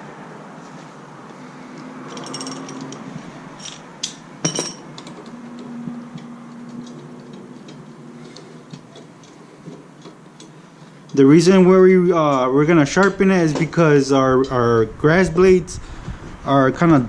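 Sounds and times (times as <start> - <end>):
metal tools clinking on blade: 2.1 - 3.0, 3.6 - 5.2.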